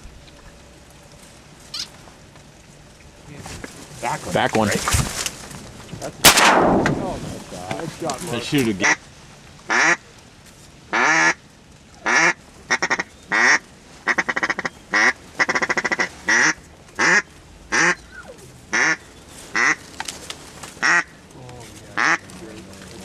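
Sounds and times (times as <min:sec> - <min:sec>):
duck quacking: 0:12.0 - 0:19.8, 0:20.8 - 0:21.1, 0:22.0 - 0:22.3.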